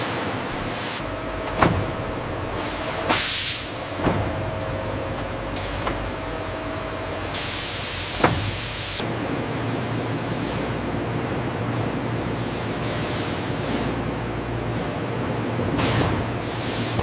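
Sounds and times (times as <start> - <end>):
factory machinery humming: 0.0 - 17.0
hissing air burst: 3.1 - 3.8.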